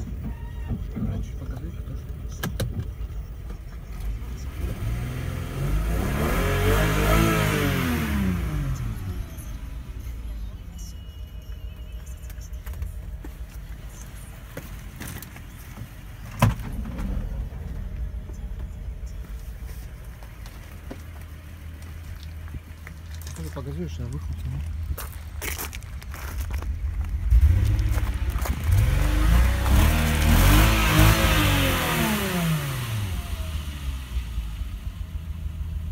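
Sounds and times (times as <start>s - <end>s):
engine revving and idling: 0.9s - 10.6s, 26.5s - 35.9s
engine idling: 8.1s - 31.2s.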